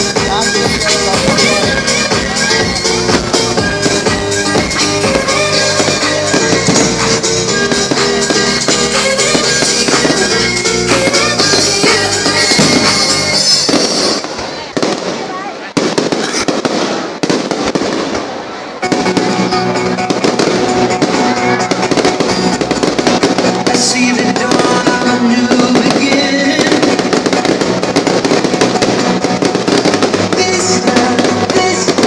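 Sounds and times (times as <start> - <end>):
loud music: 0.0 - 15.0, 18.8 - 32.0
fireworks banging and crackling: 0.0 - 32.0.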